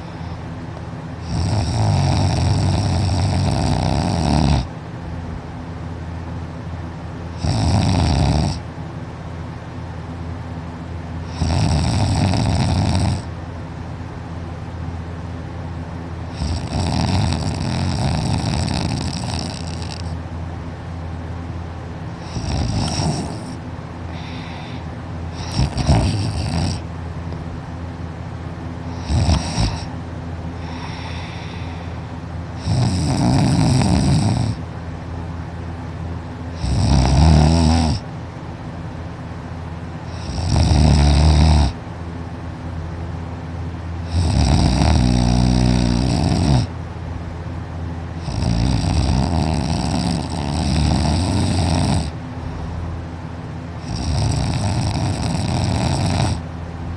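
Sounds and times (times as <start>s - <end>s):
person snoring loudly: 1.2s - 4.7s, 7.4s - 8.6s, 11.3s - 13.3s, 16.3s - 20.2s, 22.2s - 24.8s, 25.4s - 26.8s, 29.0s - 29.9s, 30.6s - 31.9s, 32.6s - 34.6s, 36.6s - 38.0s, 40.1s - 41.8s, 44.0s - 46.7s, 48.2s - 52.2s, 53.8s - 56.4s.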